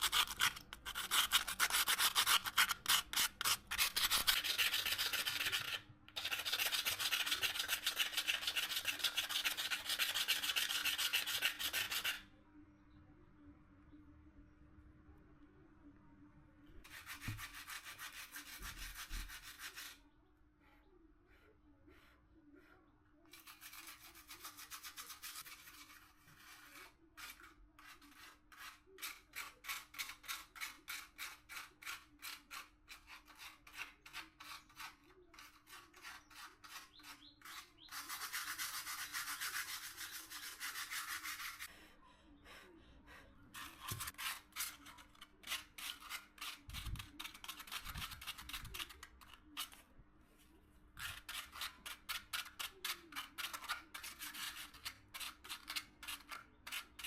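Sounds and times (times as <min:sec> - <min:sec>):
faint steady hum: 0:12.2 - 0:16.9.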